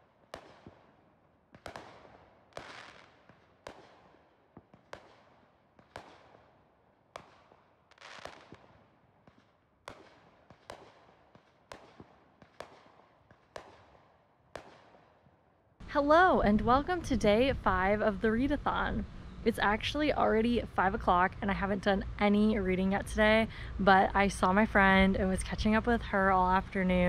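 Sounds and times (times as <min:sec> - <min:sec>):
faint fireworks bangs: 0:00.0 - 0:15.4.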